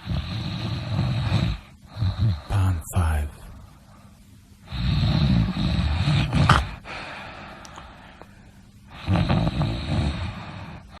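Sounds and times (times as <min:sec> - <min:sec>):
person snoring: 0:00.0 - 0:03.2, 0:04.7 - 0:07.1, 0:08.9 - 0:11.0.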